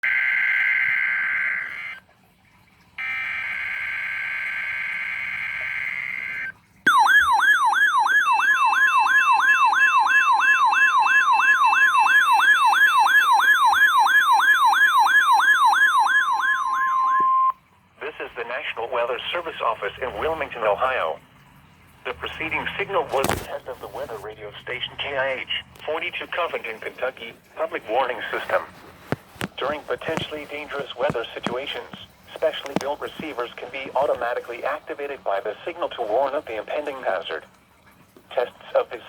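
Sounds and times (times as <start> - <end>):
steady alarm tone: 0.0 - 2.0, 3.0 - 17.6
sweeping siren-like alarm: 0.0 - 2.0, 3.0 - 17.7
digital data buzzing warble: 3.0 - 7.2.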